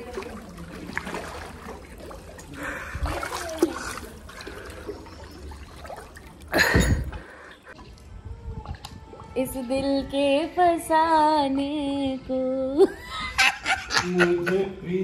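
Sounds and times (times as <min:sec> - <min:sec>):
water sloshing in a pool: 0:00.0 - 0:11.8.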